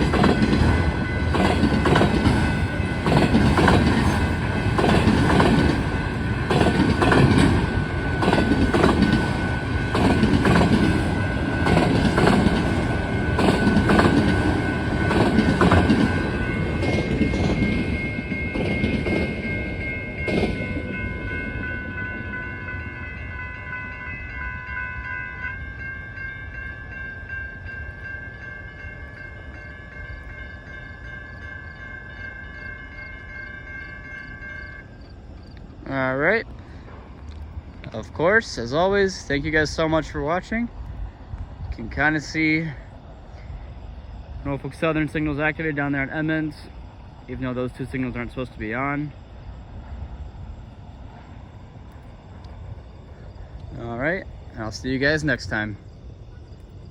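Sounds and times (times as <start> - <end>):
train wheels clattering over joints: 0.0 - 21.6
high-pitched ringing tones: 0.0 - 40.7.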